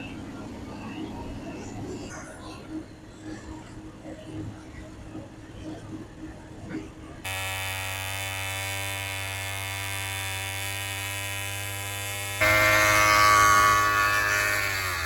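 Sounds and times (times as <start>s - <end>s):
small engine buzzing: 7.3s - 15.0s.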